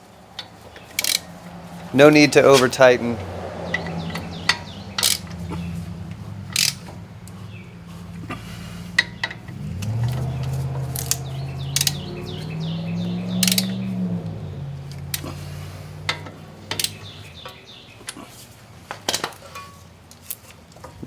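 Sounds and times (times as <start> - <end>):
socket ratchet clicking: 0.4 - 1.3, 3.7 - 5.5, 6.5 - 6.9, 10.9 - 12.2, 13.4 - 13.8, 16.1 - 17.1.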